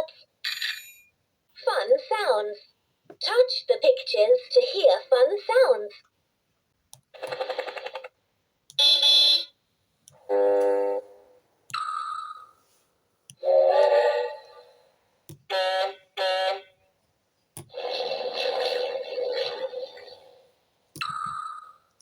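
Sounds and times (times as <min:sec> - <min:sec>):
toy speaker vehicle sound effects: 0:07.2 - 0:08.1, 0:13.4 - 0:14.7, 0:17.7 - 0:20.4.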